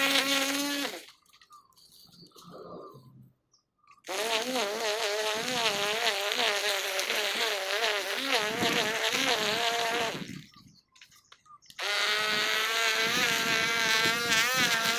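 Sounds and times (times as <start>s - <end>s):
string trimmer engine buzzing: 0.0s - 1.3s, 4.0s - 10.5s, 11.8s - 14.9s.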